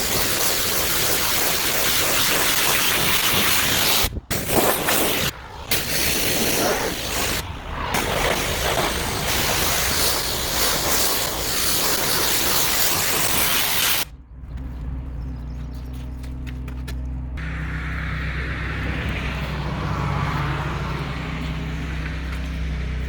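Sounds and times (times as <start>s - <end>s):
pressure washer spraying: 0.0s - 7.4s, 8.0s - 14.1s
low engine hum: 14.0s - 23.0s.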